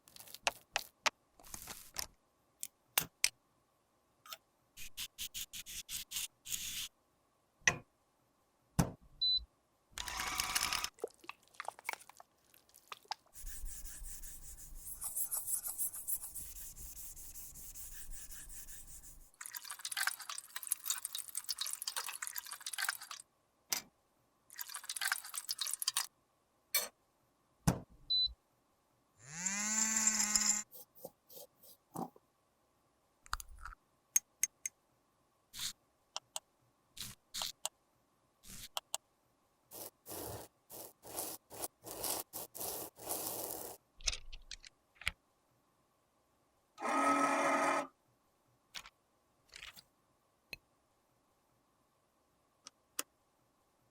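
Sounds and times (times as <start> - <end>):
makeup rubbing by hand: 13.3 - 19.3.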